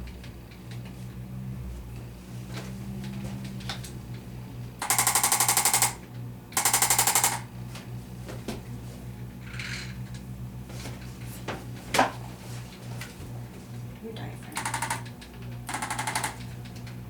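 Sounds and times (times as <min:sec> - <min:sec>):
rapid mechanical tapping: 0:04.8 - 0:07.5, 0:14.4 - 0:17.0.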